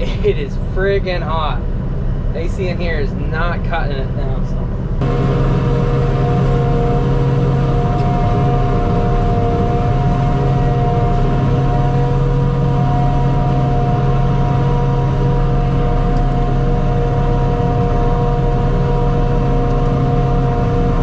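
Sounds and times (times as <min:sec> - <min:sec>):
tractor engine running: 0:00.0 - 0:21.0
forage harvester running: 0:05.0 - 0:21.0.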